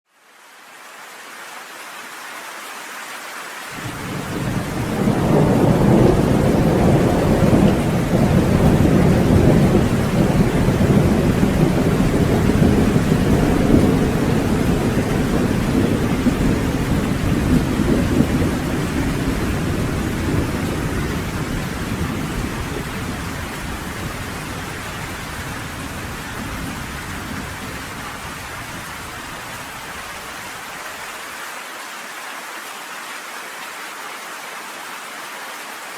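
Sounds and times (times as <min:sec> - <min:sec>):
steady rain: 0:00.1 - 0:35.9
thunder rumbling: 0:03.8 - 0:30.6.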